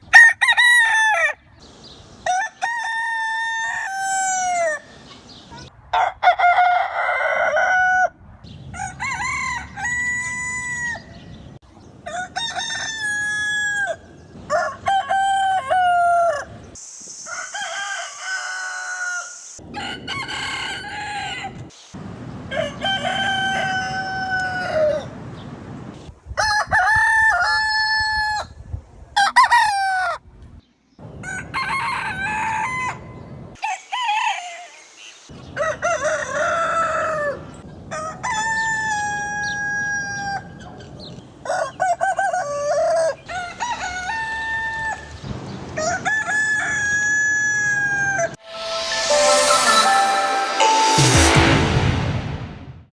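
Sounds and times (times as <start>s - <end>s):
roosters crowing: 2.2s - 4.9s, 12.0s - 16.6s, 17.4s - 21.6s, 22.5s - 25.0s, 35.6s - 40.5s, 41.5s - 48.4s.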